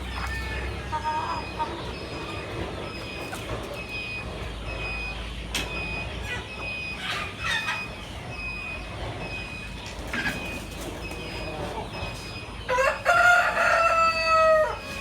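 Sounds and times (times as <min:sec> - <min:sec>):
chicken squawks: 0:00.0 - 0:02.3, 0:06.2 - 0:08.0.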